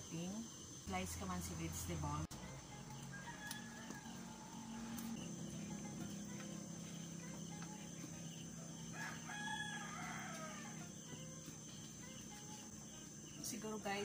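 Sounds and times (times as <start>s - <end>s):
steady low hum: 0.0s - 14.0s
rooster crowing: 2.9s - 6.2s, 8.3s - 11.1s.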